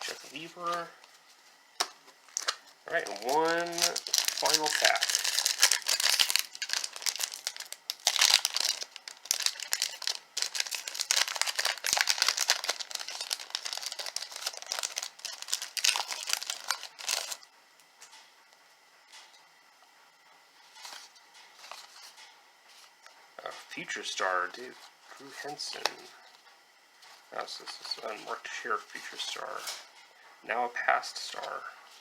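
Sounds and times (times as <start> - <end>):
card pack wrapper tearing and crinkling: 2.3 - 17.4
faint handling sounds: 20.3 - 30.4.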